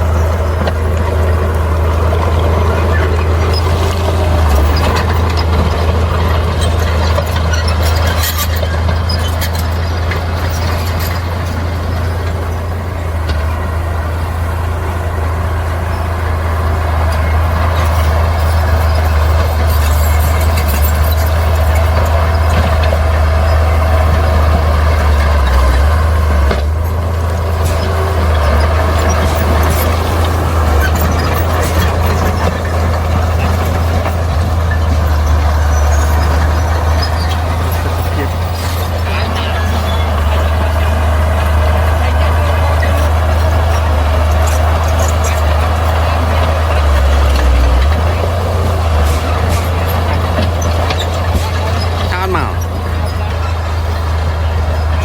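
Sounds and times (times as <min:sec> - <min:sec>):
bulldozer diesel engine drone: 0:00.0 - 0:55.0.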